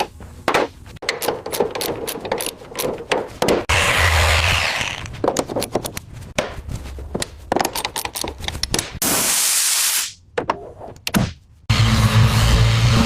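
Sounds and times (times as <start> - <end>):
workshop tools clicking and knocking: 0.0 - 3.7, 5.2 - 6.1, 7.2 - 9.0
air spray hiss: 9.0 - 10.2.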